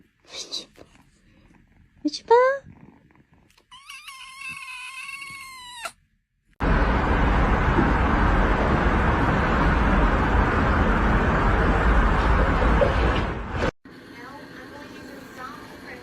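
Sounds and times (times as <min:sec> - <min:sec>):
cat meowing: 0:03.6 - 0:06.0
loud steady rushing noise: 0:06.6 - 0:13.7.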